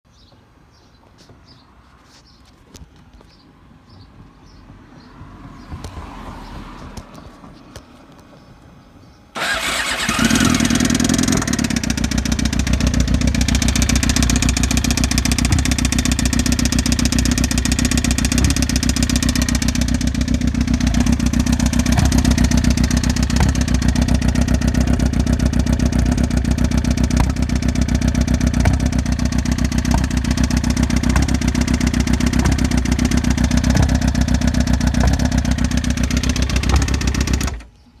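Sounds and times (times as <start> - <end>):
motorcycle engine starting and idling: 9.3 - 38.0
gurgling exhaust: 9.4 - 37.6
loud engine ticking: 9.4 - 37.7.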